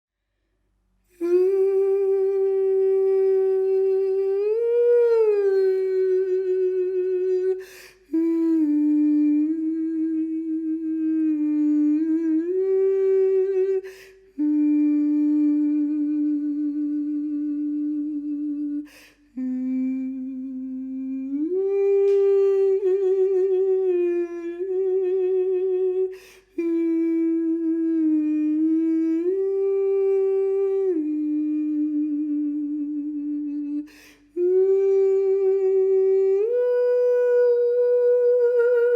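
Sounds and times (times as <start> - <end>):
person humming held notes: 1.1 - 38.9
person breathing: 7.6 - 8.1, 13.8 - 14.4, 18.8 - 19.4, 26.1 - 26.6, 33.8 - 34.4.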